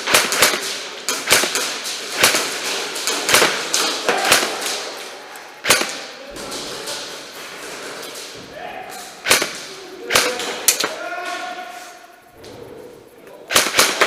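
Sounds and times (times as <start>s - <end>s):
airsoft gun shots: 0.0s - 5.0s, 5.6s - 6.7s, 9.2s - 11.5s, 13.5s - 14.0s.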